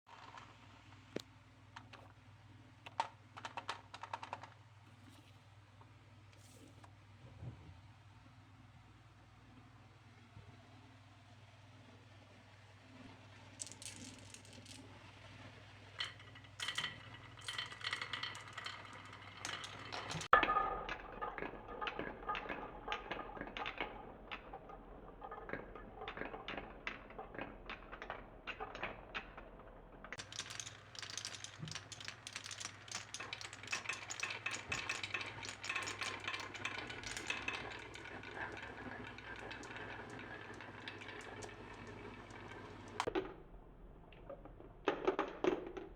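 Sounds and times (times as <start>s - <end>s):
marbles rolling down wooden run: 2.9s - 4.6s, 13.6s - 43.4s, 44.1s - 45.9s.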